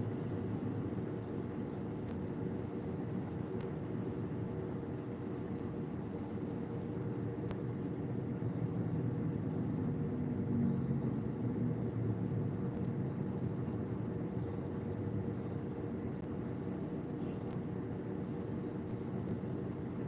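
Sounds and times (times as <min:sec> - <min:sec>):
vehicle engine and road noise: 0:06.9 - 0:20.0.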